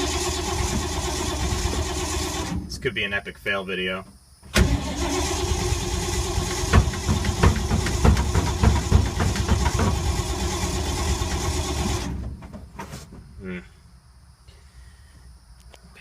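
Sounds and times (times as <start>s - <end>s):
engine popping: 0.0s - 2.6s, 4.6s - 12.8s
car engine cranking: 0.0s - 2.8s, 4.5s - 12.8s.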